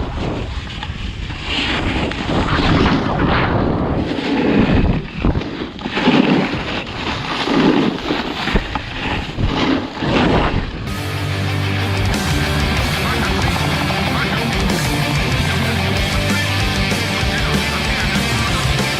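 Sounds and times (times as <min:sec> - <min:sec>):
wind on microphone: 0:00.0 - 0:10.9
snowboard scraping icy snow: 0:00.0 - 0:18.9.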